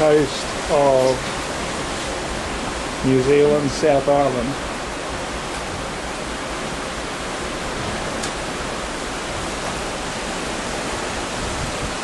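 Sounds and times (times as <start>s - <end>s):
wind on microphone: 9.4s - 12.0s.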